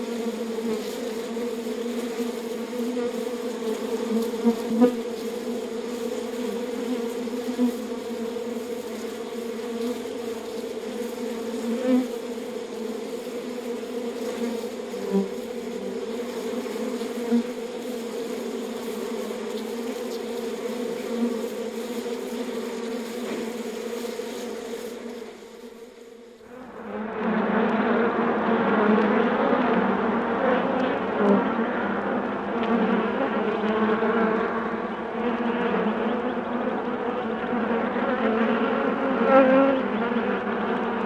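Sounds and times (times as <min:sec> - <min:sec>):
bees buzzing: 0:00.0 - 0:29.7.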